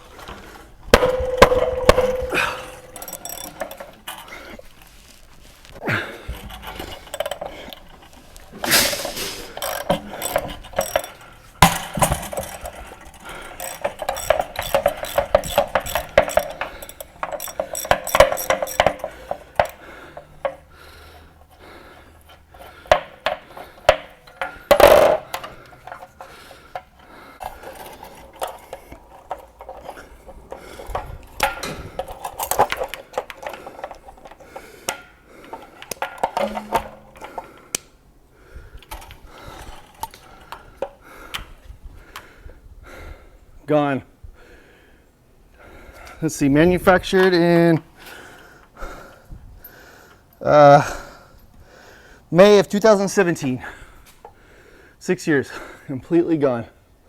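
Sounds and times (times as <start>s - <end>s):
metal clatter: 0.8s - 4.4s, 6.3s - 20.6s, 35.8s - 37.5s
socket wrench and metal parts clinking: 0.9s - 4.8s, 6.3s - 37.7s.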